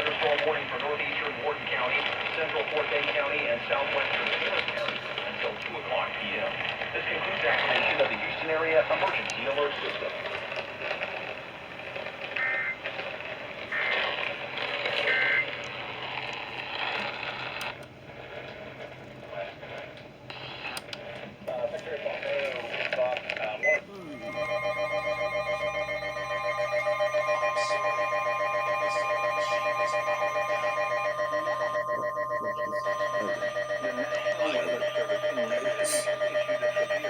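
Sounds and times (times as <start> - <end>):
radio static hiss: 0.0 - 24.4, 25.8 - 37.0
buzzy two-tone digital warble: 24.0 - 37.0.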